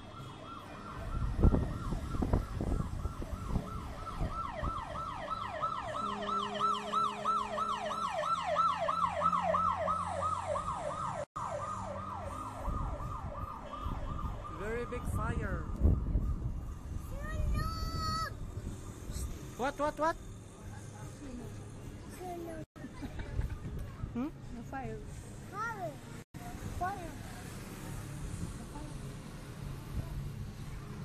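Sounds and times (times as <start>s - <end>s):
police siren yelping: 0.0s - 16.4s
traffic rumble: 0.0s - 31.0s.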